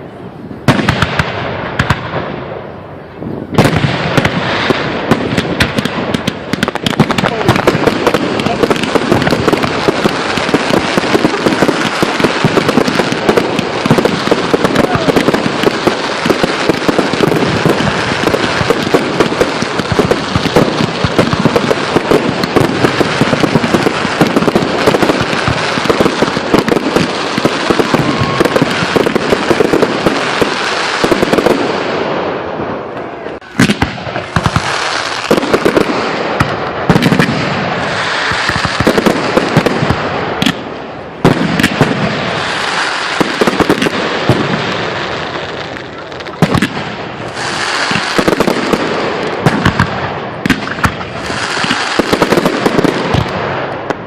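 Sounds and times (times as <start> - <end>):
fireworks bangs and crackle: 0.0 - 54.0.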